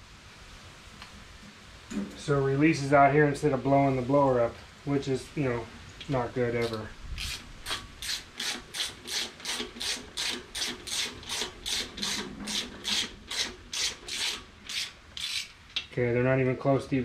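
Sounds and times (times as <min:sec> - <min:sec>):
ratchet wrench rasping: 0:08.0 - 0:15.6.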